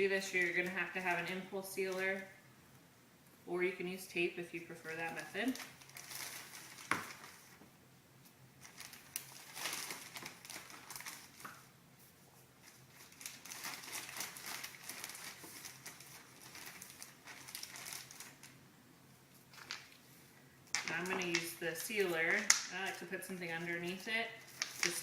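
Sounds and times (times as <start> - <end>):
plastic bag crinkling: 4.9 - 7.6, 8.6 - 11.7, 12.6 - 18.6, 20.7 - 25.0.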